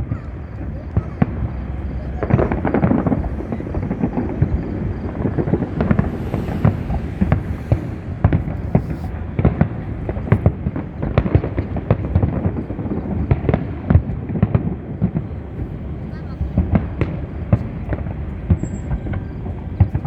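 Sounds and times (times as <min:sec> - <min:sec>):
steady rumble: 0:00.0 - 0:11.2.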